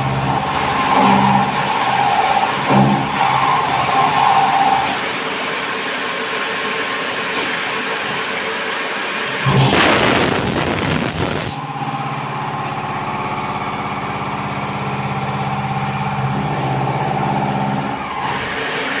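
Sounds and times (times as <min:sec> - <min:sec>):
machining centre hum: 0:00.0 - 0:04.0, 0:09.4 - 0:18.1
rush of noise: 0:09.5 - 0:11.6.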